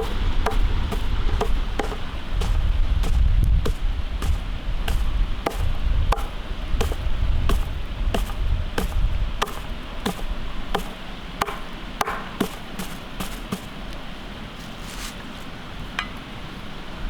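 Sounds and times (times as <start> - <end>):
knife chopping on wooden board: 0.0 - 13.7.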